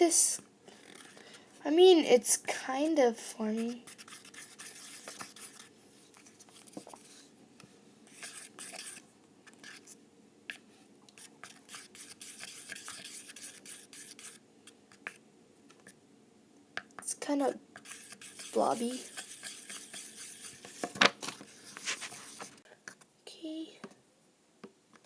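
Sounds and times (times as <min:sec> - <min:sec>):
stirring thick mixture scraping: 0:00.7 - 0:01.7, 0:03.1 - 0:07.4, 0:08.0 - 0:16.0, 0:17.8 - 0:22.6.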